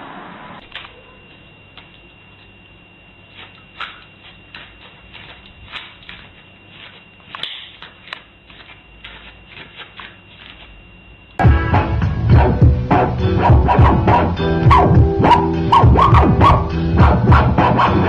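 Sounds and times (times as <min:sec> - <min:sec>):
faint steady high tone: 0:00.8 - 0:11.4
loud music: 0:11.4 - 0:18.0.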